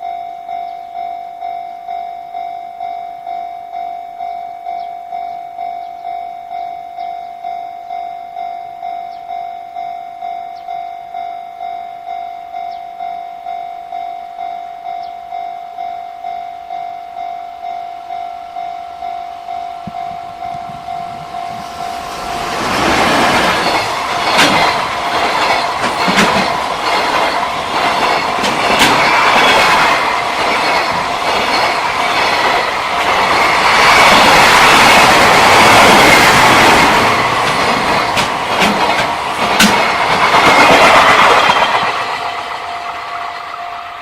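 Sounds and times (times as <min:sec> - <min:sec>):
level crossing bell ringing: 0:00.0 - 0:22.1
freight train passing: 0:00.0 - 0:44.0
train wheels clacking on rails: 0:19.5 - 0:44.0.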